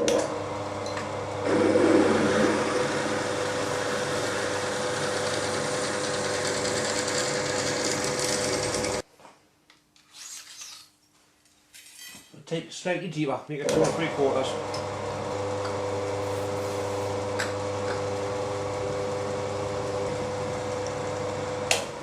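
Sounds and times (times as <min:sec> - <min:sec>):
drill cutting into metal: 0:16.1 - 0:17.3.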